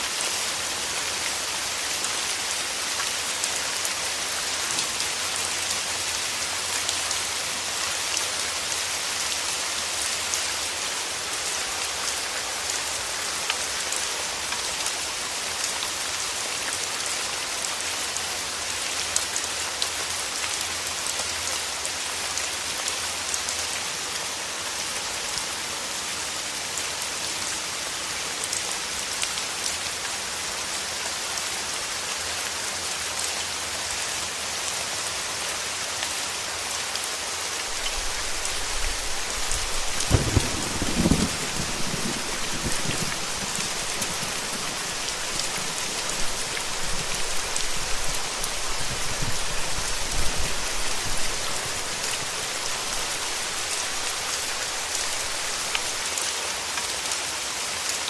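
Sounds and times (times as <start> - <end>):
steady rain: 0.0 - 58.0
rumble of thunder: 37.8 - 48.2.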